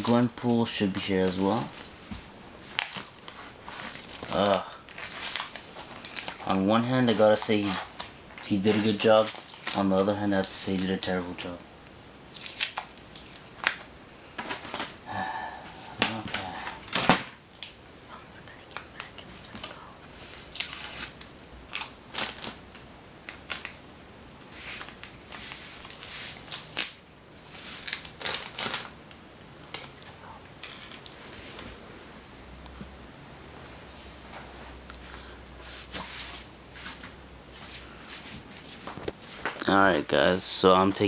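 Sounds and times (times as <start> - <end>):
tape and cardboard tearing: 12.3 - 13.8, 24.7 - 28.9.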